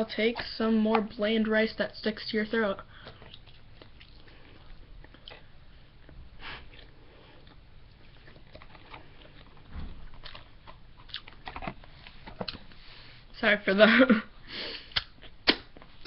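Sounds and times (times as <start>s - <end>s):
person chewing rice: 2.9s - 11.9s
wet mouth smacking: 14.9s - 15.8s.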